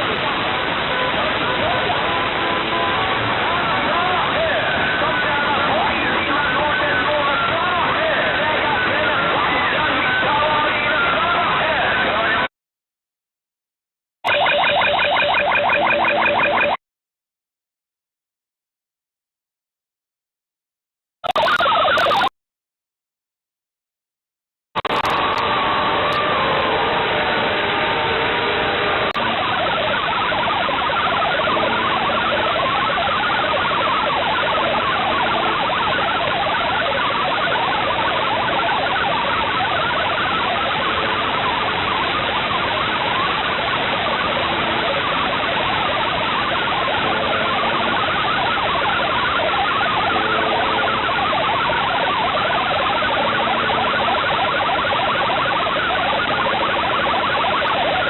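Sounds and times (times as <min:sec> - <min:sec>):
radio static hiss: 0:24.8 - 0:26.2.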